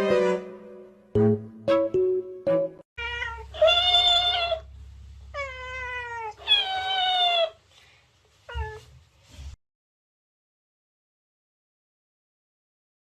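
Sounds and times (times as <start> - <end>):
cat meowing: 3.0 - 4.7, 5.3 - 7.6, 8.5 - 8.9
low steady hum: 3.0 - 6.9.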